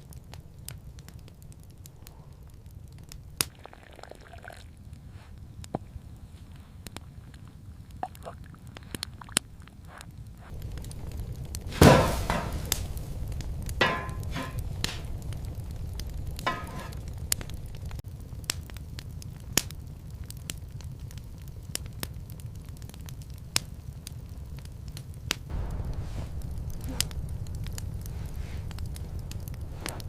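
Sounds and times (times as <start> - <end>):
low steady rumble: 0.0 - 30.0
sharp crackles and pops: 0.0 - 30.0
loud crunching bursts: 10.4 - 22.7, 24.4 - 30.0.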